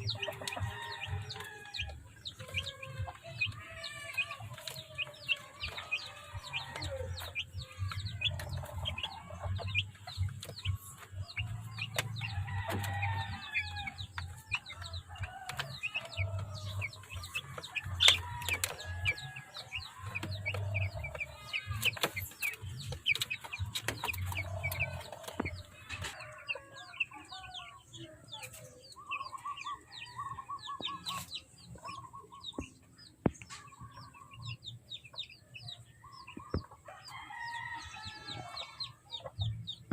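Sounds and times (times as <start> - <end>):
chickens clucking: 0.0 - 39.9
chicks peeping: 0.0 - 39.9.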